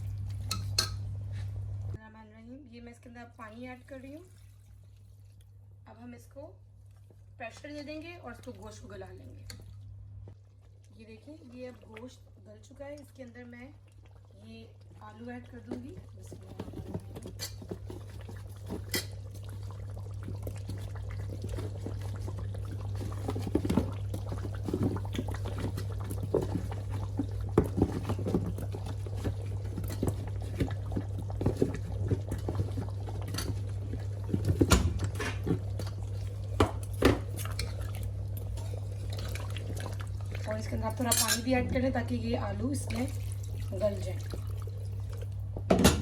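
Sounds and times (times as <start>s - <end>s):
spoon clinking against a pot: 0.4s - 1.1s, 41.1s - 41.5s
wet splashes in a pot: 3.0s - 45.7s.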